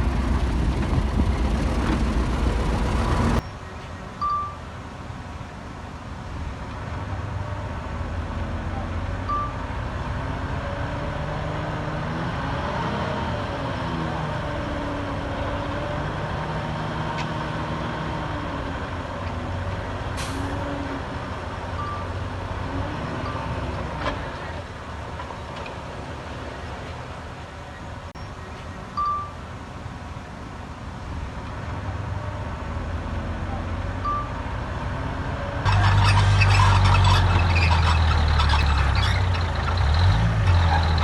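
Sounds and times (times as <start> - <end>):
heavy diesel machinery engine: 0.0 - 3.4, 5.2 - 28.1, 30.8 - 41.0
short beeps: 4.2 - 4.6, 9.3 - 9.7, 21.8 - 22.2, 29.0 - 29.4, 34.0 - 34.4.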